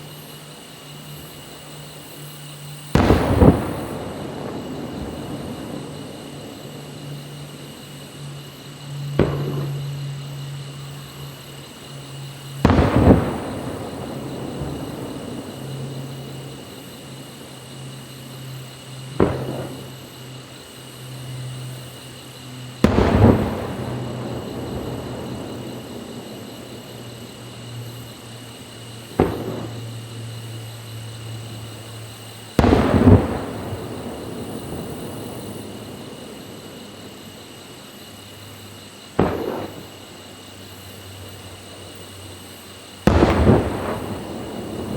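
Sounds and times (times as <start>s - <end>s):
firework shells bursting: 0.6s - 8.1s, 12.6s - 17.9s, 19.1s - 20.3s, 22.8s - 38.3s, 39.2s - 40.4s, 43.0s - 44.9s.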